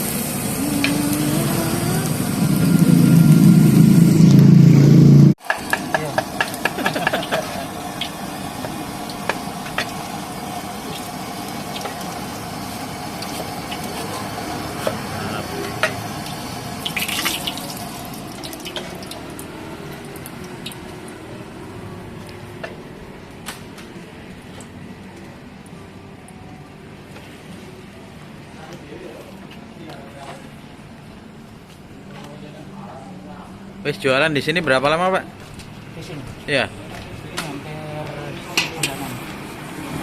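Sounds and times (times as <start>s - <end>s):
food sizzling in a wok: 0.0s - 4.1s, 5.4s - 22.8s.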